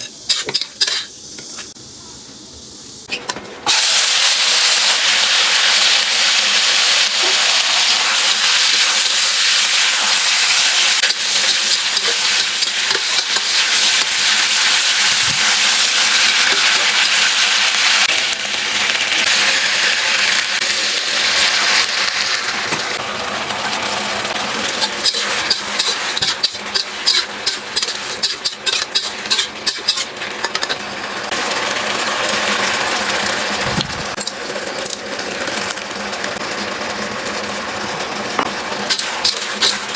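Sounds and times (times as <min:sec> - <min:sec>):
utensil scraping pan: 0:00.0 - 0:01.7, 0:24.6 - 0:30.8, 0:38.8 - 0:39.9
food sizzling in a pan: 0:00.0 - 0:33.6, 0:38.8 - 0:39.9.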